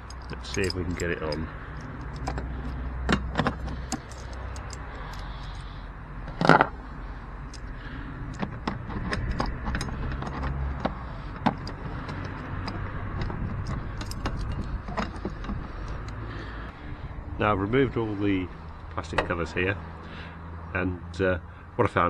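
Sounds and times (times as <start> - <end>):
metallic tool clicks and clinks: 0.0 - 2.8, 3.8 - 5.7, 7.4 - 8.4.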